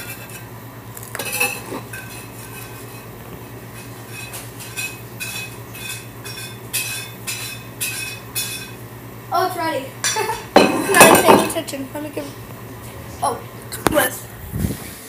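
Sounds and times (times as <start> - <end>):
steady low hum: 0.0 - 15.0
metal utensil scraping ceramic plate: 1.2 - 3.1, 3.7 - 8.8.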